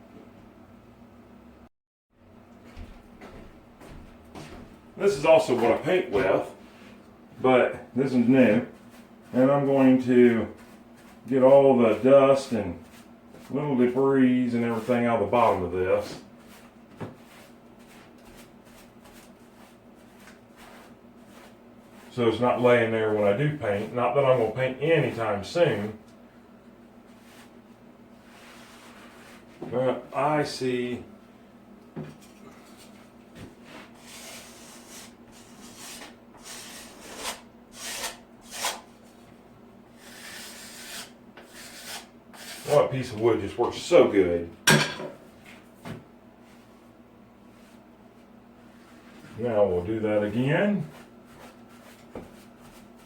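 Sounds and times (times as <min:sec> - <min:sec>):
paintbrush bristles rustling: 0:14.6 - 0:26.0
wood scraping along drywall: 0:33.6 - 0:38.9, 0:40.0 - 0:42.9.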